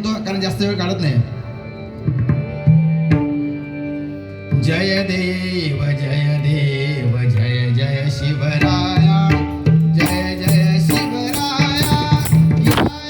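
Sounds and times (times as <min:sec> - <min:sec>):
devotional singing: 0:03.5 - 0:13.0
hand drums playing: 0:08.6 - 0:13.0.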